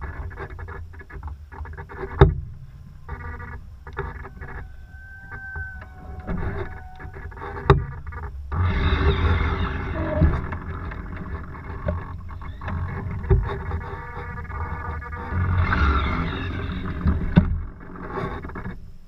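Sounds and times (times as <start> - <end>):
wind buffeting microphone: 0.8 - 14.5.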